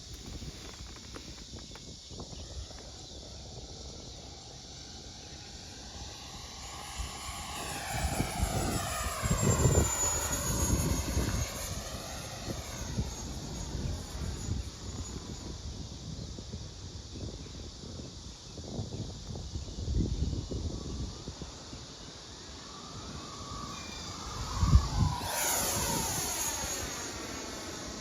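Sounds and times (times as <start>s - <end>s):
model jet fan whine: 0.0s - 28.0s.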